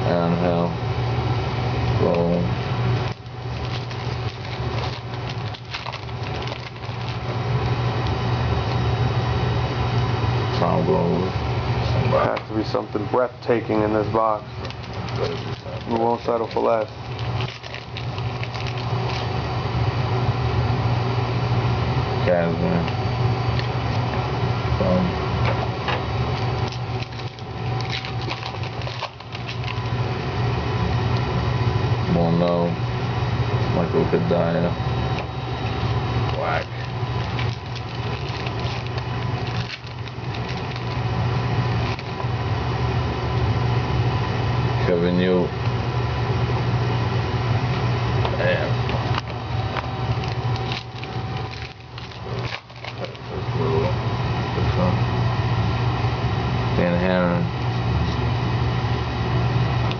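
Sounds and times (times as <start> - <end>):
steady low hum: 0.0 - 59.9
cards clicking and rustling: 3.1 - 7.3, 14.6 - 19.3, 26.6 - 29.9, 36.8 - 41.0, 49.0 - 53.2.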